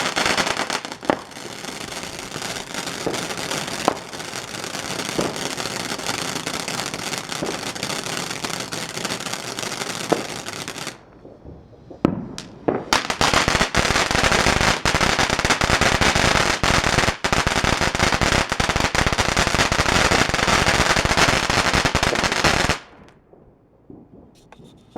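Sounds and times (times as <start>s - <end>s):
sharp firework pops: 0.0s - 1.6s, 3.0s - 4.1s, 5.1s - 5.5s, 7.4s - 7.7s, 10.0s - 15.8s
firework fountain crackling: 0.0s - 23.2s.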